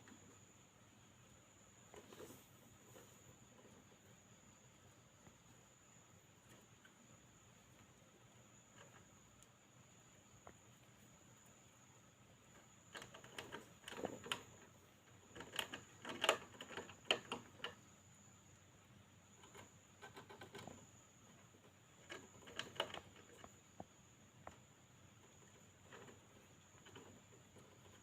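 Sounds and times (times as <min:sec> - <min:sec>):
hamster scratching and clicking: 0:12.5 - 0:17.9, 0:19.4 - 0:28.0.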